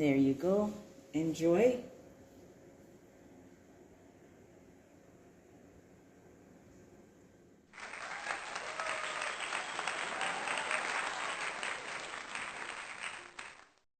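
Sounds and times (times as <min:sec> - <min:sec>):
crowd applauding: 0:07.8 - 0:13.8.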